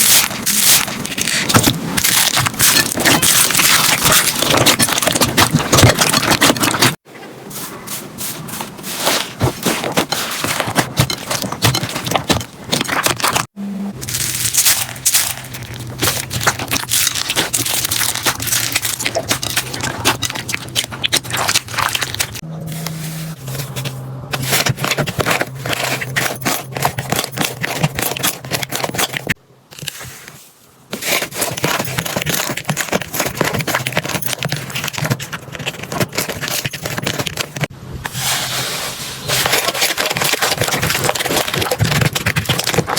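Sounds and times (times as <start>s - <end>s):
slime crackling and popping: 14.0s - 22.4s.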